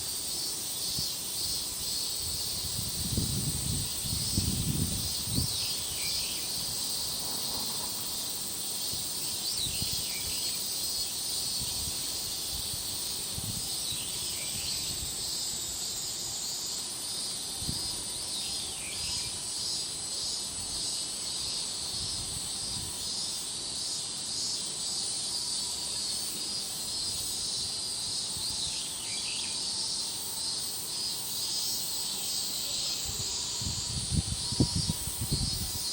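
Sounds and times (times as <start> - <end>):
insect chorus trilling: 0.0 - 35.9
wind buffeting microphone: 2.3 - 5.6, 33.1 - 35.8.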